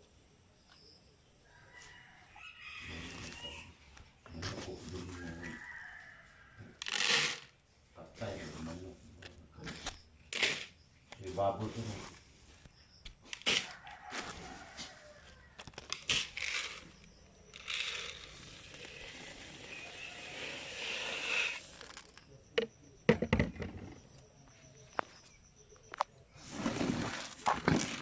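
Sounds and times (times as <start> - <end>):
rustling and crackling plant material: 2.8 - 6.0, 6.8 - 22.2, 26.4 - 28.0.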